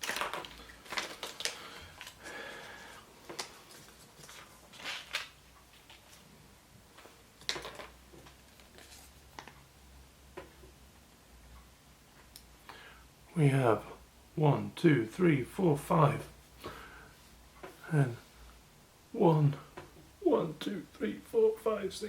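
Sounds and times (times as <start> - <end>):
plastic snapping: 0.0 - 2.2
plastic pieces clicking: 0.0 - 2.3, 7.4 - 8.4
wrapping crinkling: 0.0 - 6.3, 7.0 - 9.6.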